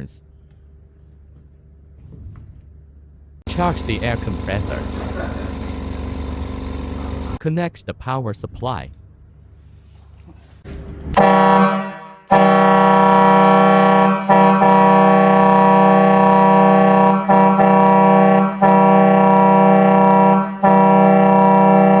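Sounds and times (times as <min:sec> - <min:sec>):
truck air horn blasts: 0:03.5 - 0:07.4, 0:11.1 - 0:22.0.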